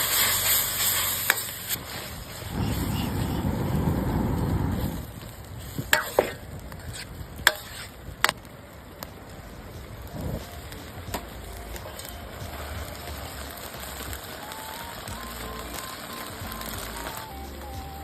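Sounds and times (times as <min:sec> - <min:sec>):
food sizzling in a pan: 0:00.0 - 0:08.1, 0:09.8 - 0:18.0.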